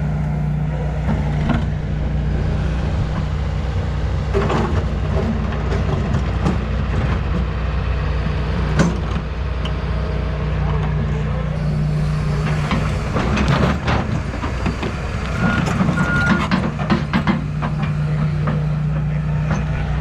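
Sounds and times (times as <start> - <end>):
excavator diesel engine running: 0.0 - 20.0
bucket clanking and scraping: 11.6 - 18.8.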